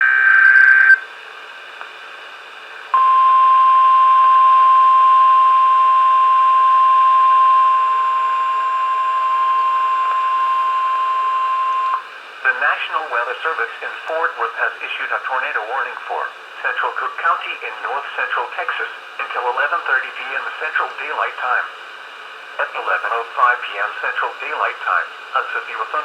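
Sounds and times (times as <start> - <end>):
radio hiss: 0.0 - 1.0, 11.7 - 26.0
warbling data burst screech: 0.0 - 1.0
steady high alarm tone: 3.0 - 12.0.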